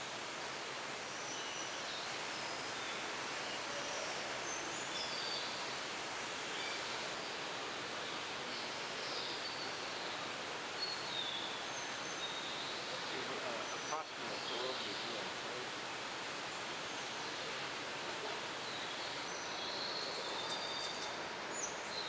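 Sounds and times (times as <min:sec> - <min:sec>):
steady hiss: 0:00.0 - 0:19.5
small birds chirping: 0:10.7 - 0:19.4.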